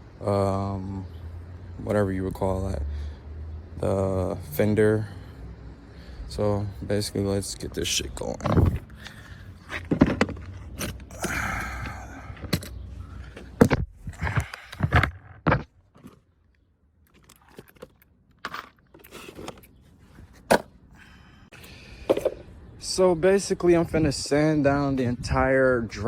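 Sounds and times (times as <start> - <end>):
knocks and clicks of handling: 8.4 - 11.1, 11.8 - 16.2.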